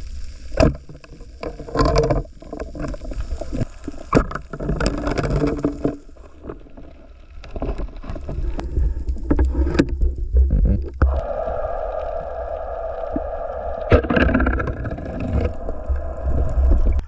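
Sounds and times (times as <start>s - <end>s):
low rumble: 8.7s - 17.0s
steady hum: 11.0s - 17.0s.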